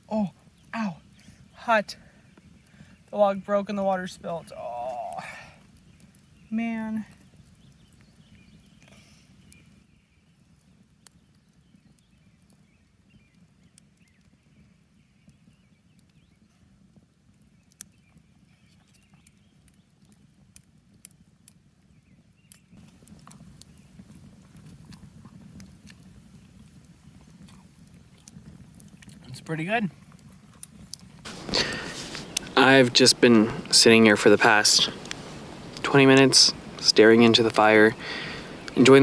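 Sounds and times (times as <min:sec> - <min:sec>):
campfire crackling: 0:00.0 - 0:12.5, 0:22.8 - 0:39.0.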